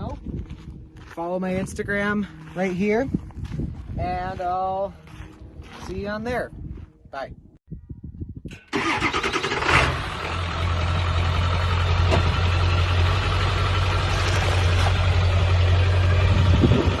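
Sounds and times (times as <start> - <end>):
vehicle engine idling: 8.8 - 17.0.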